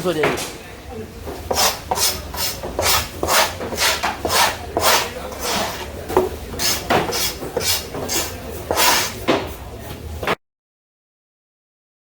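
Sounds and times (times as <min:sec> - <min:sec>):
knife chopping fish on wood: 0:01.4 - 0:09.5.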